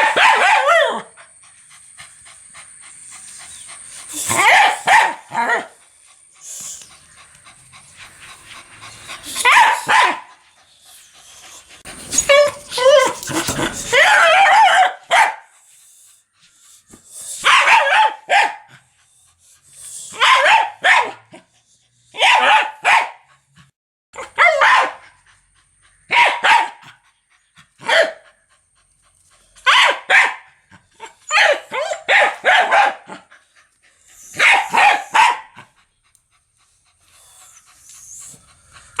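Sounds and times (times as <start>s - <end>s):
dog barking: 0.0s - 1.1s, 4.2s - 5.8s, 9.4s - 10.3s, 12.3s - 15.5s, 17.4s - 18.7s, 20.2s - 21.4s, 22.1s - 23.2s, 24.2s - 25.2s, 26.1s - 27.0s, 27.8s - 28.2s, 29.6s - 30.6s, 31.3s - 33.2s, 34.4s - 35.7s.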